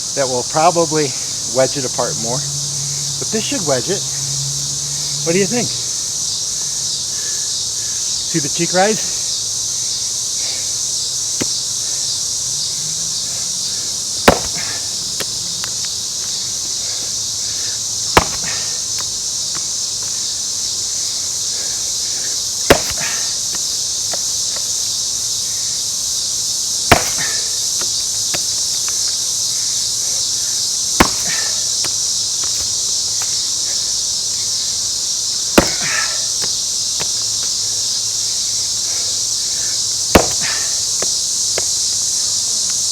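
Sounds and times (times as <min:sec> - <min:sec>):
insects chirping: 0:00.0 - 0:42.9
axe striking wood: 0:14.2 - 0:14.8, 0:18.1 - 0:18.7, 0:22.7 - 0:23.3, 0:26.9 - 0:28.5, 0:31.0 - 0:32.0, 0:35.6 - 0:36.2, 0:40.1 - 0:40.7.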